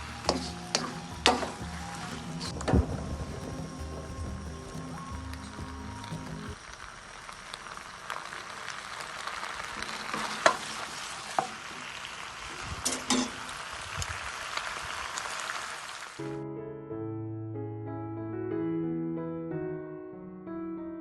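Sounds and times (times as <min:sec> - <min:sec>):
food sizzling in a frying pan: 0:00.0 - 0:16.2.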